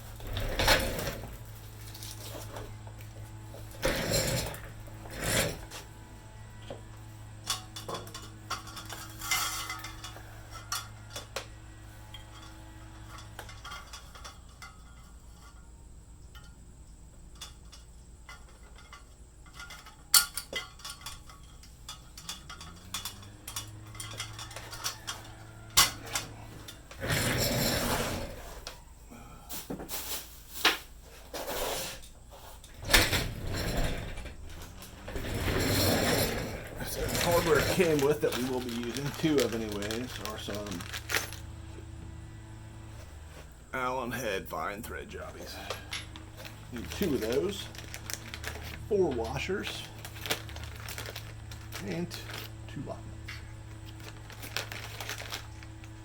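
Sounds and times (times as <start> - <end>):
steady low hum: 0.0 - 56.0
metal parts clinking: 7.4 - 15.7, 17.3 - 28.4, 32.6 - 41.7, 45.3 - 56.0
rustling scrapes: 24.0 - 28.7, 29.5 - 41.5, 45.3 - 52.6, 53.7 - 56.0.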